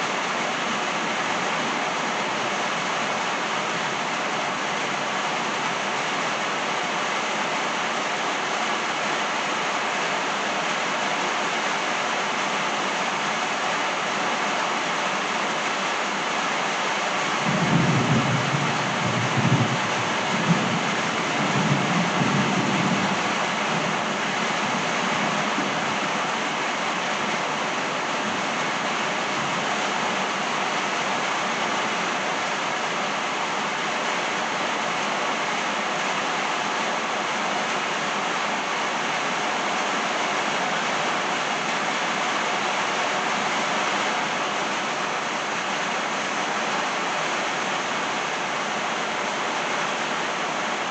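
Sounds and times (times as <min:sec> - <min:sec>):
rain falling on trees: 0:00.0 - 0:50.9
low rumble of thunder: 0:17.4 - 0:23.3.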